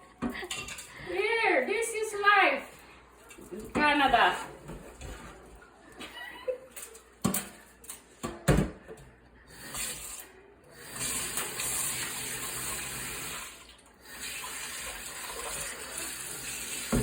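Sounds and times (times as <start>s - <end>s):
dishes washed by hand: 0.0s - 1.1s, 2.6s - 17.0s
tap water running: 9.5s - 17.0s.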